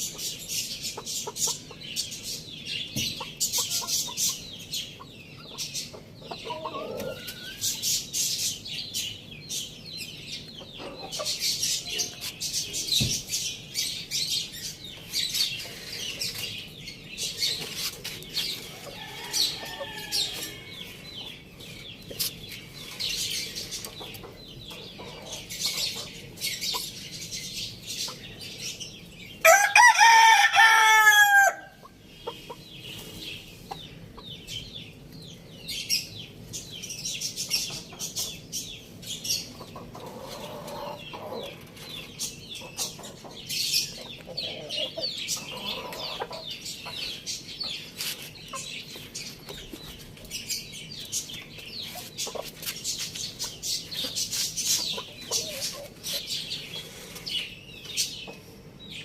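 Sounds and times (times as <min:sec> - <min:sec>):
chickens clucking: 0:00.0 - 0:59.0.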